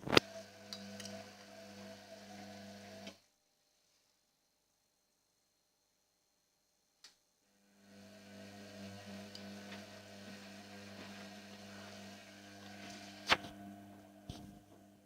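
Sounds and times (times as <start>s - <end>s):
washing machine humming: 0.0s - 3.2s, 7.6s - 15.0s.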